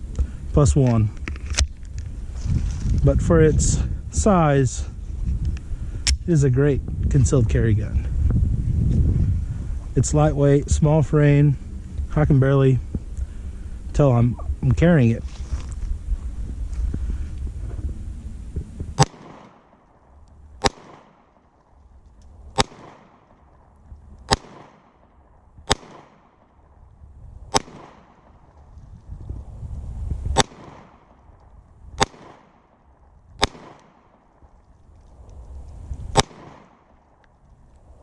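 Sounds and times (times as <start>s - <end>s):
pistol shots: 19.0s - 19.9s, 20.6s - 21.4s, 22.6s - 23.4s, 24.3s - 26.5s, 27.5s - 28.4s, 30.3s - 31.2s, 32.0s - 32.8s, 33.4s - 34.4s, 36.1s - 37.0s.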